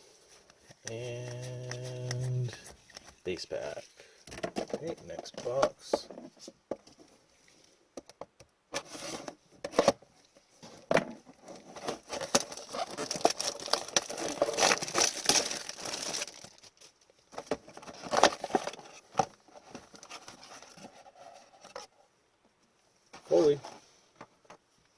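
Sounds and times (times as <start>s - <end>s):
wrapping crinkling: 11.5s - 17.1s
cardboard box being torn open: 11.9s - 16.4s.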